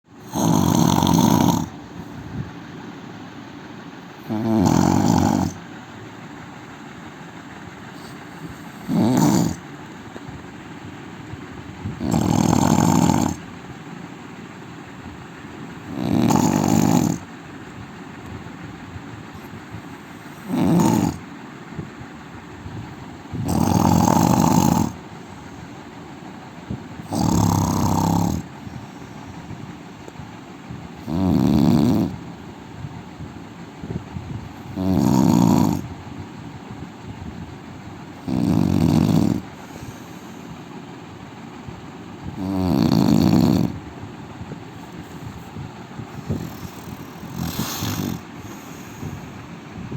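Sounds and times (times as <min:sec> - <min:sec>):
man snoring loudly: 0:00.2 - 0:01.8, 0:04.2 - 0:05.6, 0:08.0 - 0:09.6, 0:12.0 - 0:13.4, 0:15.9 - 0:17.3, 0:20.3 - 0:21.2, 0:23.3 - 0:25.0, 0:27.0 - 0:28.9, 0:31.0 - 0:32.2, 0:34.6 - 0:35.8, 0:38.2 - 0:40.1, 0:42.3 - 0:43.8, 0:46.1 - 0:49.2.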